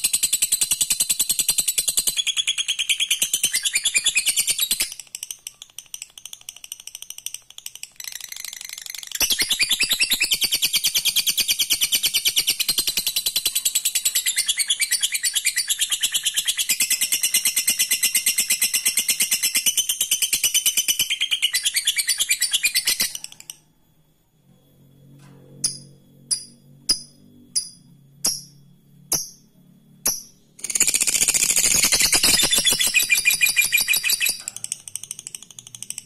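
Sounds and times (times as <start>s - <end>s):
lovebird trilling chatter: 30.1s - 36.0s.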